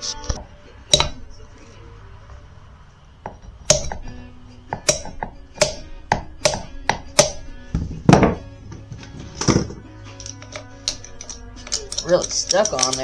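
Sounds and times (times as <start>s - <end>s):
background music: 0.0s - 13.0s
hammer blows on metal: 0.4s - 2.2s, 3.2s - 8.5s.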